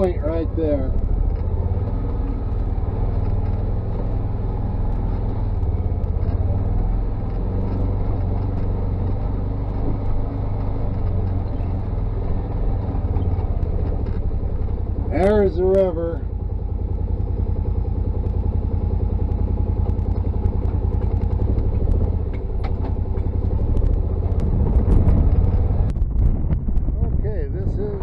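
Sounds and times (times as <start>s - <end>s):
vehicle engine droning: 0.0s - 28.0s.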